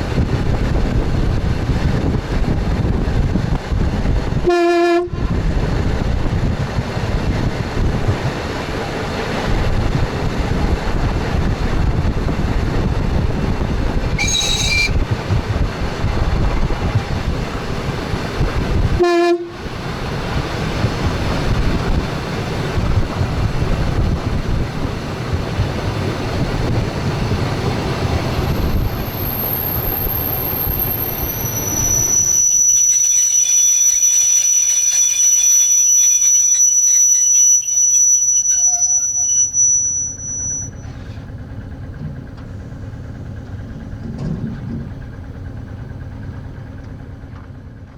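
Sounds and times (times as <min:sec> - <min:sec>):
train wheels rumbling on rails: 0:00.0 - 0:47.9
brakes squealing: 0:08.6 - 0:18.8, 0:19.9 - 0:46.8.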